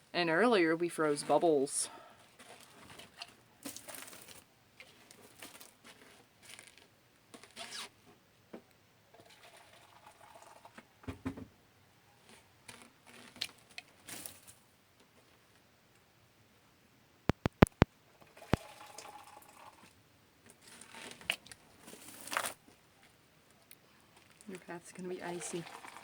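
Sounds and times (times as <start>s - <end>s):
rustling and scuffing: 2.2s - 6.9s, 20.7s - 22.8s
thump: 11.1s - 11.5s.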